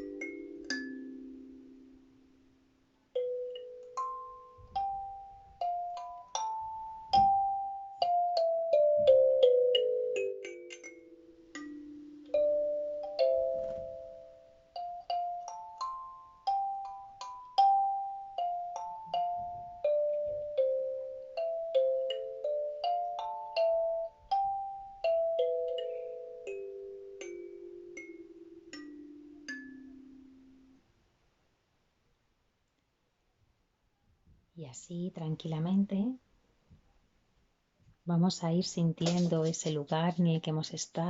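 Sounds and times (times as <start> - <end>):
kalimba plucked notes: 0.0 - 30.8.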